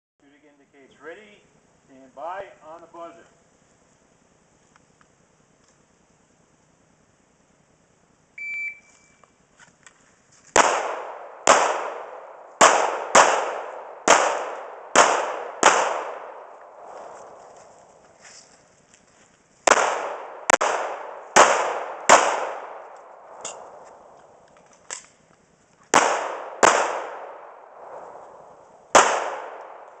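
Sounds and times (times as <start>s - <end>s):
shot timer beep: 8.4s - 9.3s
pistol shots with ringing echo: 10.6s - 17.4s, 19.7s - 24.2s, 25.9s - 30.0s.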